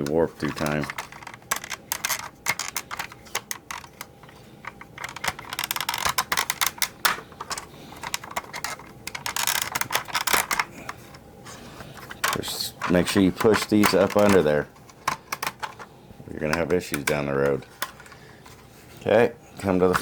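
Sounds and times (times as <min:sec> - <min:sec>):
plastic toy parts clicking: 0:00.4 - 0:10.7, 0:12.2 - 0:15.9.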